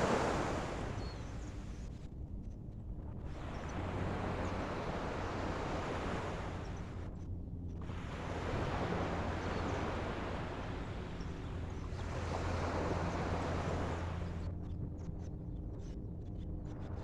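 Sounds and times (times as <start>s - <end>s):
ocean waves washing on shore: 0.0s - 1.0s
wind rumbling on microphone: 0.0s - 17.0s.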